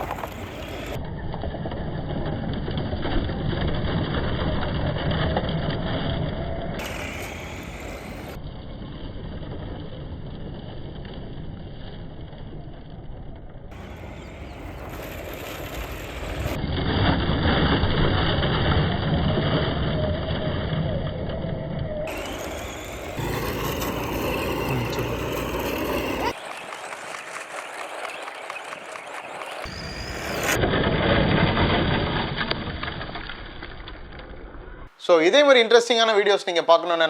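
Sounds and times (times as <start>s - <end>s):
rc truck electric motor: 0.0s - 8.4s, 13.7s - 28.7s
tyres on the ground: 0.0s - 35.0s.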